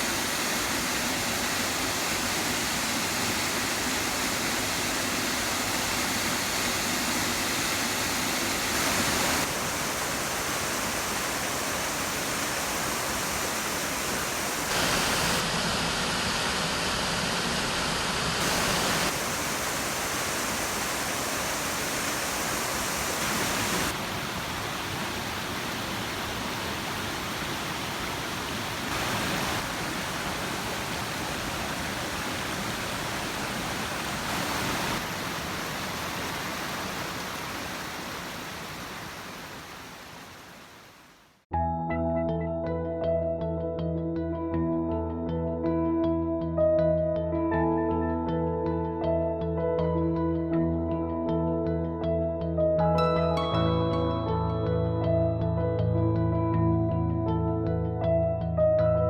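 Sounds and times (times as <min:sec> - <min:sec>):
waterfall roaring: 0:00.0 - 0:41.4.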